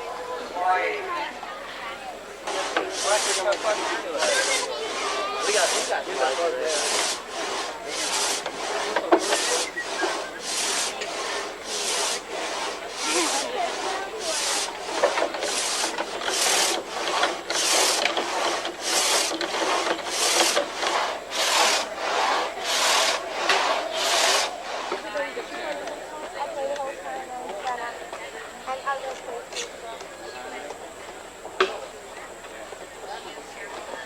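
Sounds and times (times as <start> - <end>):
hand tool working wood: 2.4 - 26.0.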